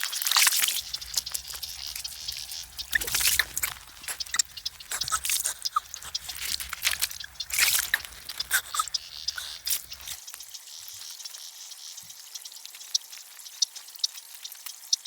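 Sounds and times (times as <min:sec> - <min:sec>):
water splashing and dripping: 0:00.2 - 0:10.2
crackly high hiss: 0:00.3 - 0:10.3.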